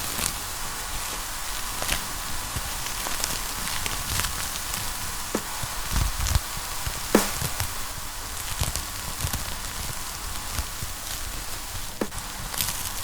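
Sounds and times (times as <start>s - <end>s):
wood fire crackling and popping: 0.0s - 13.0s
low thumps: 4.6s - 8.8s.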